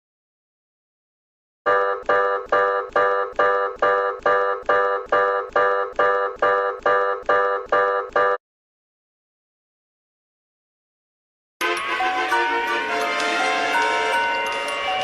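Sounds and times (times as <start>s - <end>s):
electronic alert beeps: 1.7s - 8.4s.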